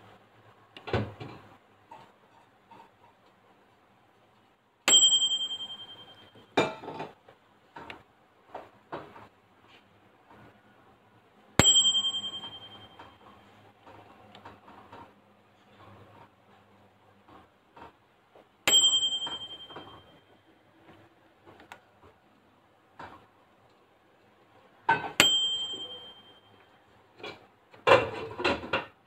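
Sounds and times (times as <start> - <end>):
microwave timer bell dinging: 4.9 - 6.6, 11.6 - 13.4, 18.7 - 20.4, 25.2 - 26.8.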